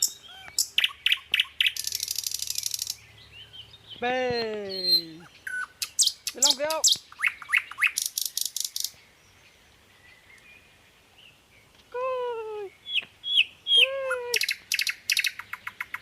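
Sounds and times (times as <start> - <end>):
short falling bird calls: 0.0 - 3.0
birds chirping: 0.0 - 16.0.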